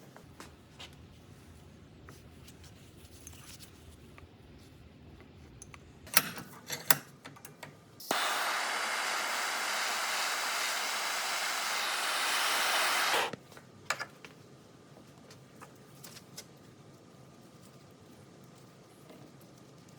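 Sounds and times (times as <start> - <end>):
pressurised air hissing: 8.0 - 13.4.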